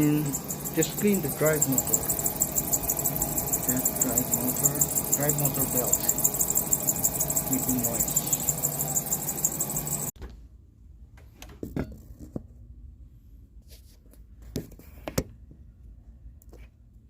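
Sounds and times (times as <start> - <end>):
low hum: 0.0 - 10.1
treadmill squeaking: 0.0 - 10.1.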